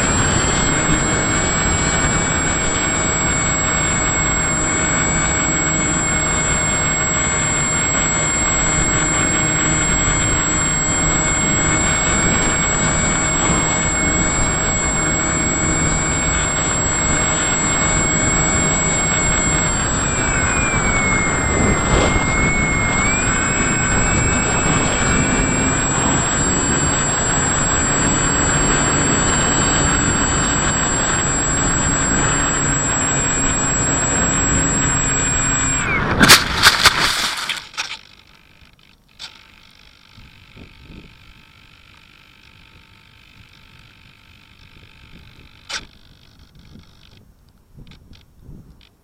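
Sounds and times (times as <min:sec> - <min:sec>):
wind rush: 0:00.0 - 0:37.1
model aircraft motor whining: 0:00.0 - 0:49.0.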